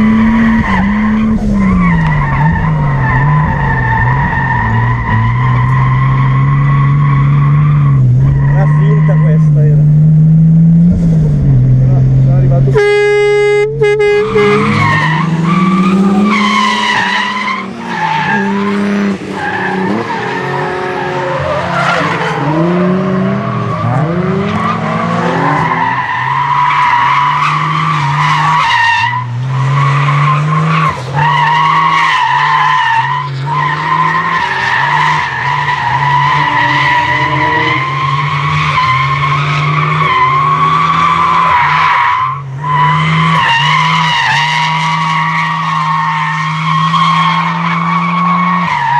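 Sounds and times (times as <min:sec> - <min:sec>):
car engine revving: 0:00.0 - 0:48.9
tyres squealing: 0:13.6 - 0:22.6.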